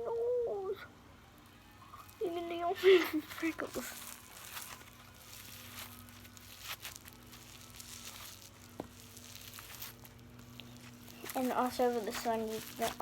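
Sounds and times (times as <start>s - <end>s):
steady low hum: 0.0s - 13.0s
foam slime crackling and squishing: 1.3s - 13.0s.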